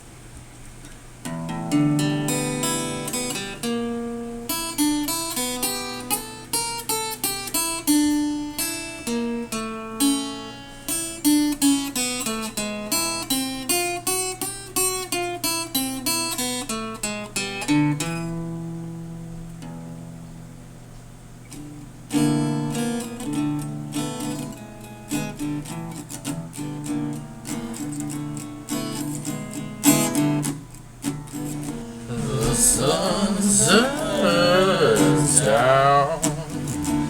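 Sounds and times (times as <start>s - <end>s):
acoustic guitar picking: 1.2s - 14.5s, 21.5s - 37.0s.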